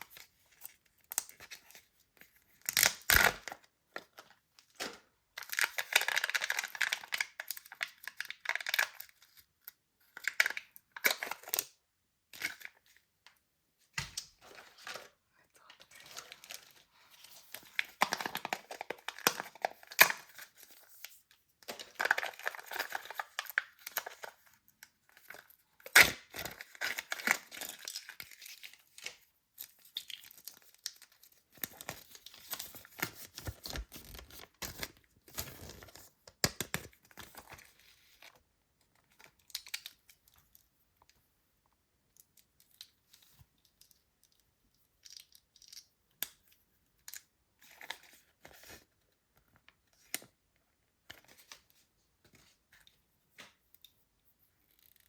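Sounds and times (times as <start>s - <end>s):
packaging tearing and rustling: 21.7s - 24.4s, 25.2s - 38.3s.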